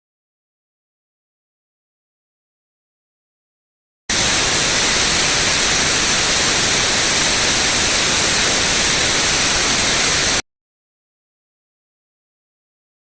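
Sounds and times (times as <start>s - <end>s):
broadcast static hiss: 4.1s - 10.4s.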